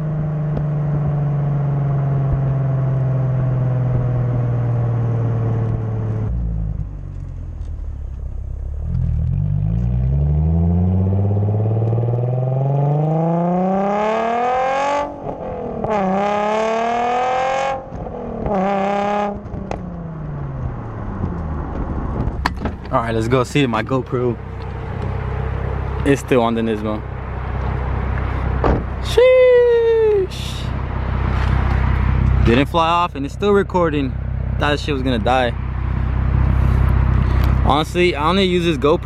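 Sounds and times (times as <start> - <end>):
car engine accelerating: 0.0 - 39.0.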